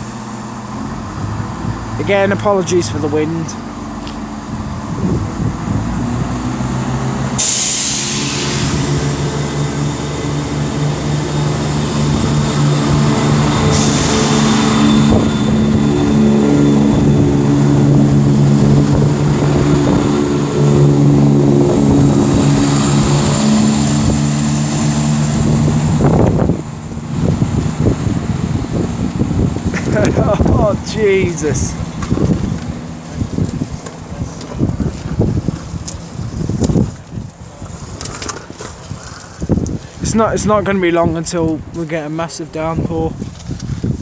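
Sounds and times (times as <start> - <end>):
diesel train engines droning: 0.0 - 44.0
brake air hissing: 7.1 - 26.6.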